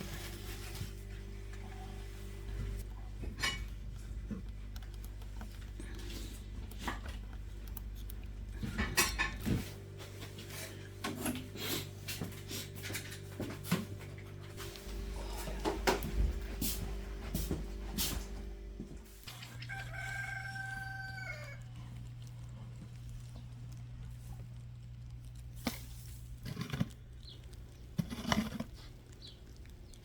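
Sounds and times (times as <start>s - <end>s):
low steady hum: 0.0s - 30.0s
things being handled: 22.1s - 29.4s.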